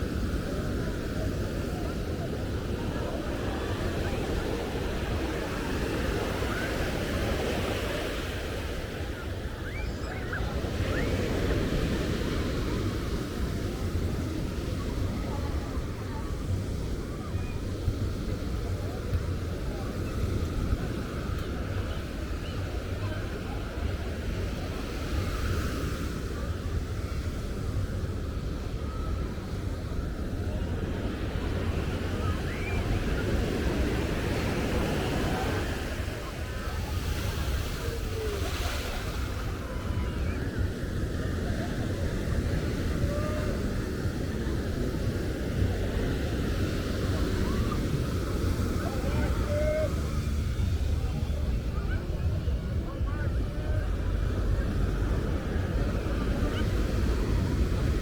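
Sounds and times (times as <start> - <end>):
surf breaking on beach: 31.4 - 58.0
faint high cries: 48.9 - 50.0.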